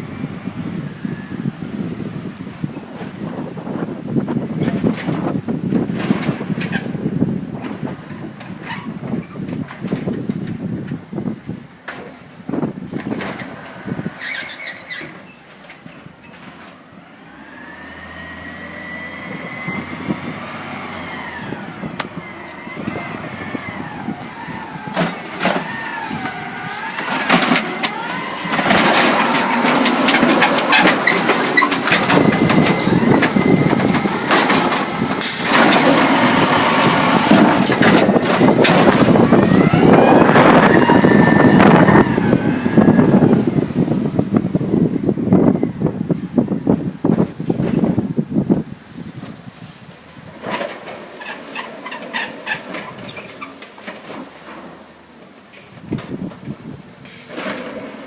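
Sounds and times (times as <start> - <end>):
garbage truck engine running: 0.0 - 58.0
high-pitched wavering squeak: 22.2 - 27.1
clattering and rattling: 24.9 - 39.6.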